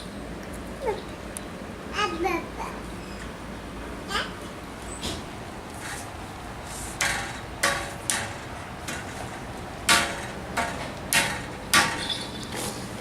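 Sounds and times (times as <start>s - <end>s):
sharp ringing knocks: 7.0s - 12.7s.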